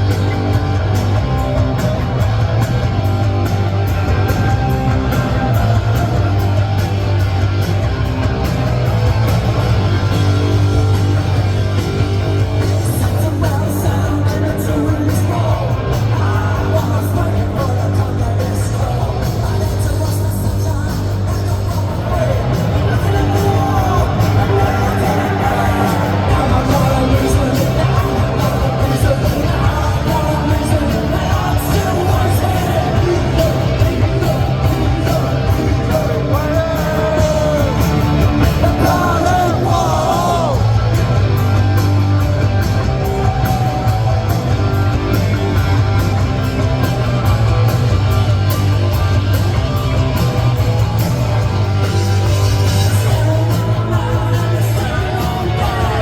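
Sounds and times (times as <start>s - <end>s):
punk rock band playing: 0.0s - 56.0s
person yelling lead vocal: 12.6s - 41.2s, 52.8s - 56.0s.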